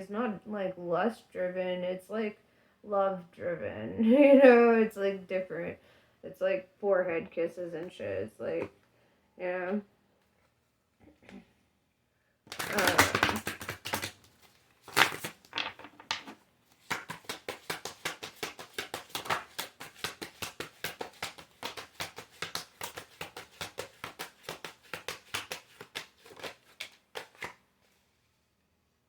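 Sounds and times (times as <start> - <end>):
cards flicking while shuffled: 12.5 - 27.6
cards slapping: 12.5 - 27.6.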